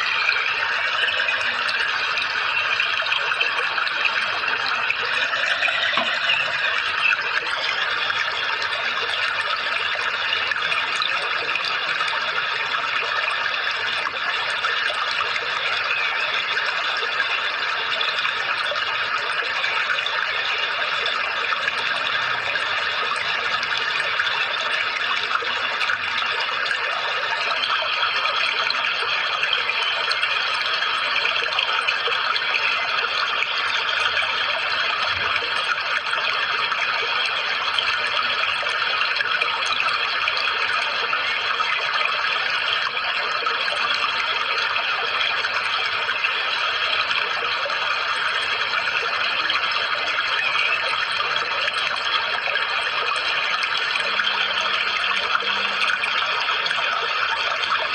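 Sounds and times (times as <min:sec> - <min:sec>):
running water: 0:00.0 - 0:57.9.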